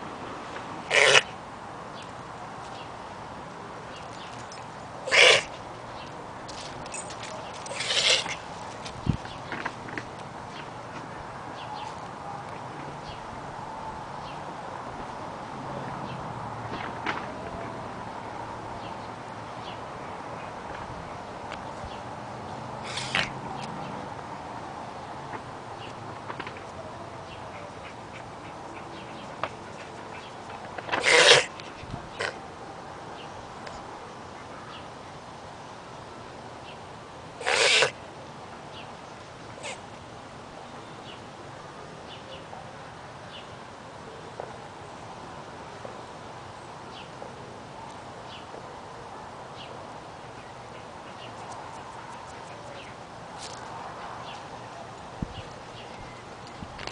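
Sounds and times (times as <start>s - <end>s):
pet reverse sneezing: 0.9s - 1.3s, 22.8s - 23.3s, 30.9s - 31.5s, 37.4s - 38.0s.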